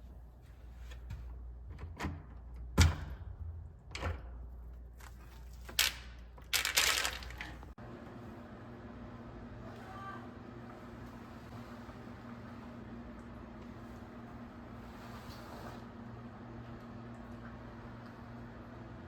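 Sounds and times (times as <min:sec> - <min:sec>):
knocks and clatters of handling: 0:05.0 - 0:07.8.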